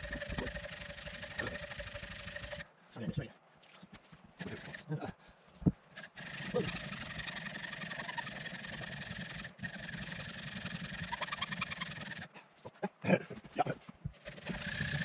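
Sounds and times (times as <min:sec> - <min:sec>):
hacksaw rasping through log: 0:06.0 - 0:12.3, 0:14.2 - 0:15.0.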